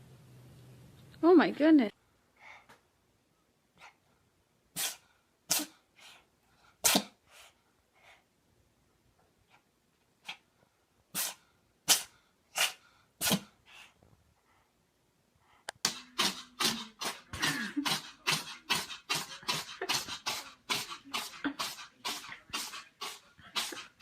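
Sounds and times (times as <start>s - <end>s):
cat sneezing: 4.7s - 5.8s, 6.8s - 7.5s, 11.1s - 13.6s, 15.8s - 24.0s.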